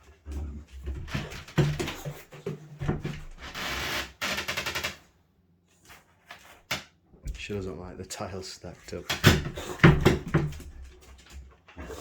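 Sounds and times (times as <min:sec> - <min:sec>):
knocks and rustling: 0:00.7 - 0:03.5.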